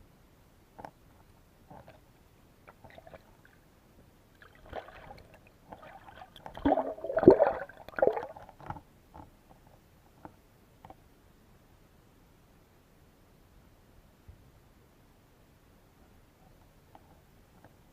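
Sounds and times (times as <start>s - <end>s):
muffled water sloshing: 4.4s - 8.7s.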